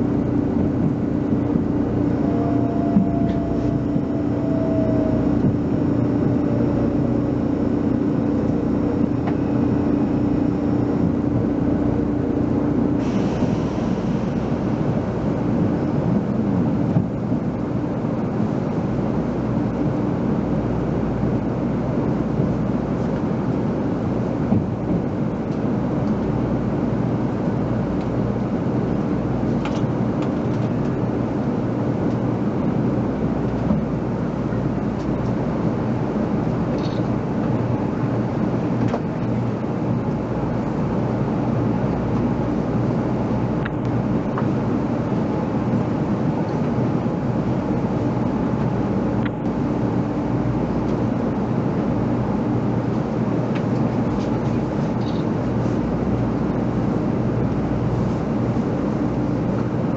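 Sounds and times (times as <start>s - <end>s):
train mechanical hum: 0.0s - 59.9s.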